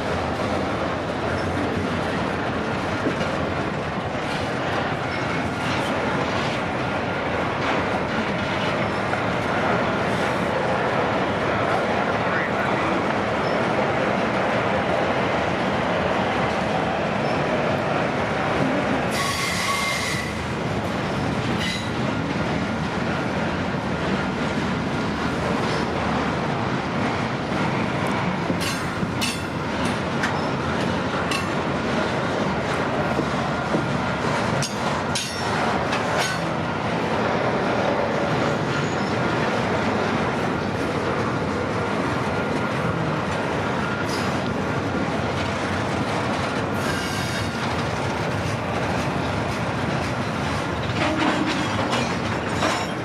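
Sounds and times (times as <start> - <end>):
freight train rumbling: 0.0 - 53.0
train wheel squeal: 13.4 - 13.7, 17.2 - 17.5, 19.1 - 20.4, 21.6 - 22.0, 30.3 - 30.6, 38.4 - 39.2, 43.9 - 44.4, 46.8 - 47.7.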